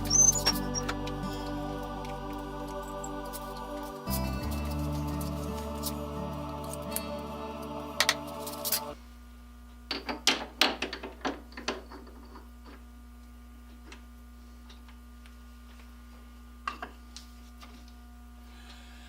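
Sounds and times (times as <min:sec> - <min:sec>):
steady low hum: 0:00.0 - 0:09.6.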